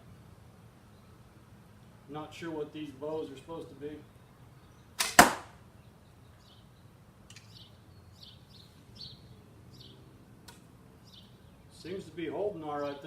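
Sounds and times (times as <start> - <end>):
arrow hitting target: 5.0 - 5.6
faint bird chirps: 5.7 - 10.0.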